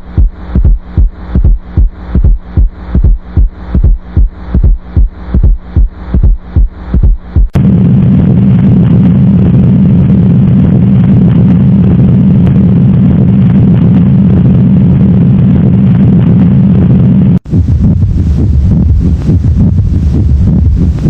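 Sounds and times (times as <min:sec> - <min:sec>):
heartbeat through stethoscope: 0:00.0 - 0:07.6, 0:17.5 - 0:21.0.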